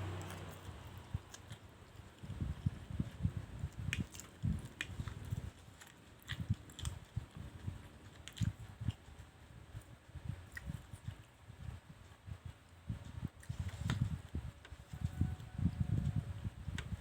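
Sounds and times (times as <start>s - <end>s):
chewing noodles: 0.0s - 9.3s.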